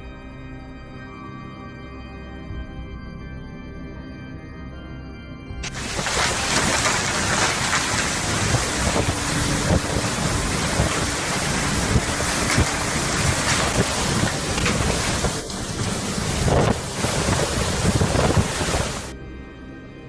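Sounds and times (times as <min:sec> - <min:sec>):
rough surging sea water: 0:05.6 - 0:19.1
strong wind on microphone: 0:05.6 - 0:19.1.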